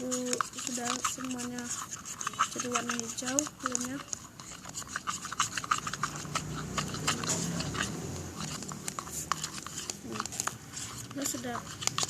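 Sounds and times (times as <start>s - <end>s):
spoon stirring thick glue: 0.0s - 12.0s
wet sticky squelches: 0.0s - 12.0s.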